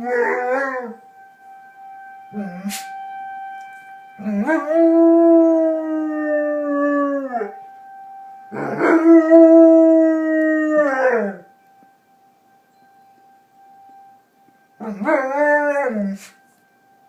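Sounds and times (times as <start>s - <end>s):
dog howling: 0.0s - 1.0s, 14.8s - 16.4s
tornado siren: 0.0s - 12.3s, 14.7s - 16.6s.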